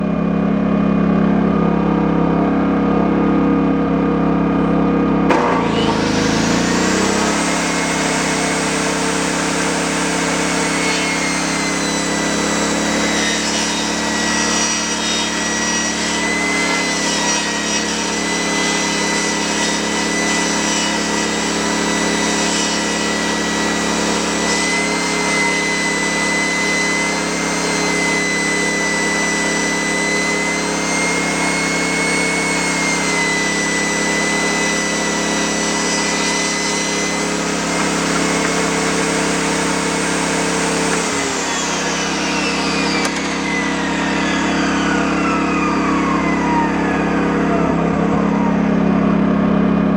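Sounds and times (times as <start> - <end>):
generator engine running: 0.0 - 13.1, 25.9 - 49.9
table saw motor whining: 0.0 - 49.9.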